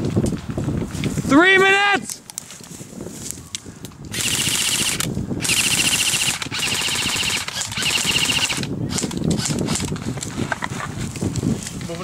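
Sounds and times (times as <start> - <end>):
airsoft gun firing full auto: 4.1 - 9.6.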